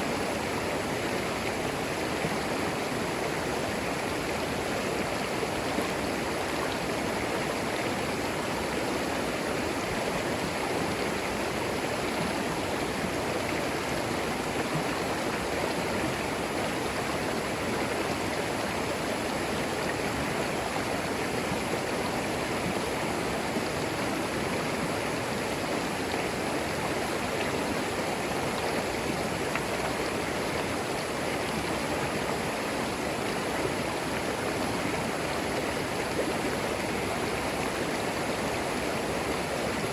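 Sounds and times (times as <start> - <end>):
creek flowing over stones: 0.0 - 39.9.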